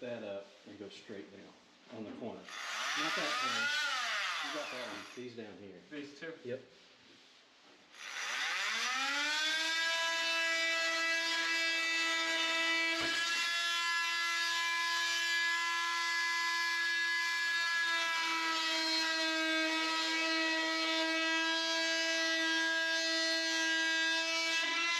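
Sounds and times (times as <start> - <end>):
power tool motor running: 2.5 - 5.2, 8.0 - 24.9.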